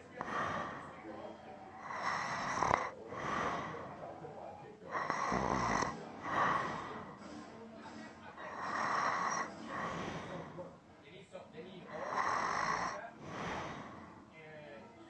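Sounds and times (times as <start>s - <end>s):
man snoring: 0.0s - 1.0s, 1.8s - 4.0s, 4.9s - 7.2s, 8.4s - 10.6s, 11.9s - 14.2s.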